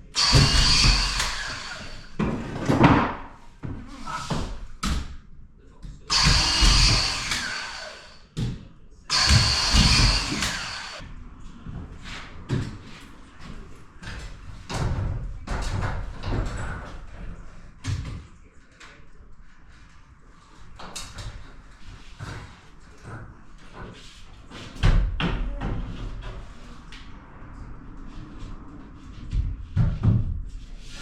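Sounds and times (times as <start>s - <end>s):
power tool running: 0.1s - 2.2s, 6.1s - 8.2s, 9.1s - 11.0s.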